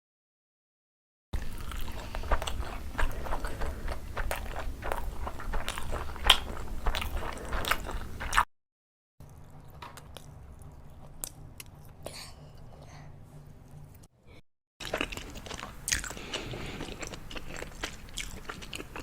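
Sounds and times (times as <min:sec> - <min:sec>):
biting and chewing mouth clicks: 0:01.5 - 0:08.4, 0:14.8 - 0:19.0.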